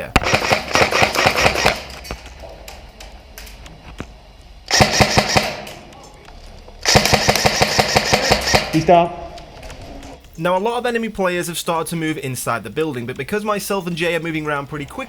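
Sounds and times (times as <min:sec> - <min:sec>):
airsoft guns firing bursts: 0:00.1 - 0:02.1, 0:04.7 - 0:05.8, 0:06.8 - 0:08.9.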